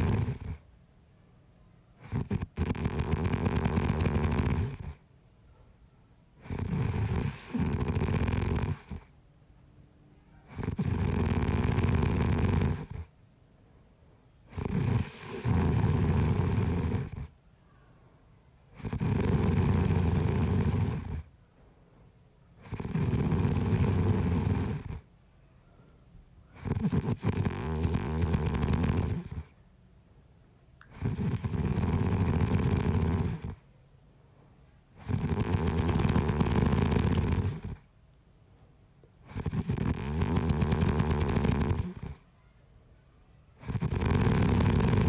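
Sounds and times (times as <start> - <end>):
man snoring: 0.0 - 0.6, 2.0 - 5.0, 6.4 - 9.0, 10.5 - 13.1, 14.5 - 17.3, 18.8 - 21.2, 22.7 - 25.0, 26.6 - 29.4, 30.9 - 33.6, 35.0 - 37.8, 39.3 - 42.1, 43.6 - 45.0.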